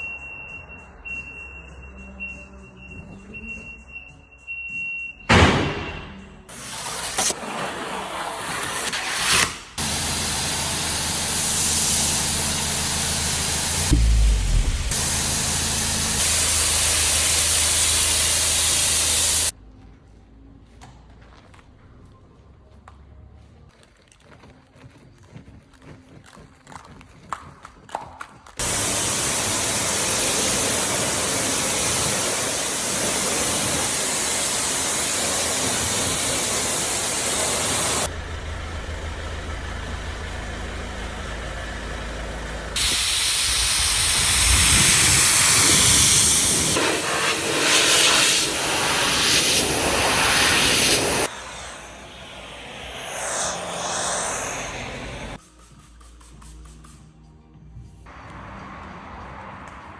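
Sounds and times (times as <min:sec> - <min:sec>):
hissing spray: 0:06.5 - 0:07.5, 0:09.4 - 0:19.5, 0:28.6 - 0:38.1, 0:42.8 - 0:56.5.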